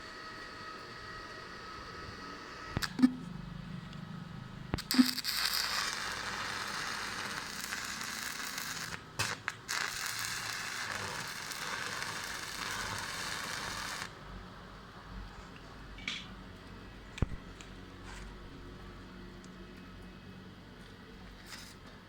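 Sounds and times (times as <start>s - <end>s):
welding arc crackling: 1.6s - 3.1s, 4.7s - 14.2s.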